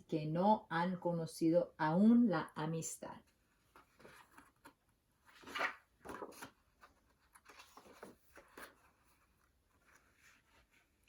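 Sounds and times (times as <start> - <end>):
paper book page rustling: 3.2 - 11.0.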